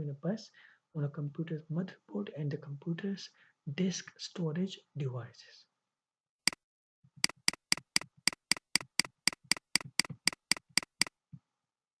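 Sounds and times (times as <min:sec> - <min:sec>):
sharp evenly spaced clicks: 0:07.2 - 0:11.1.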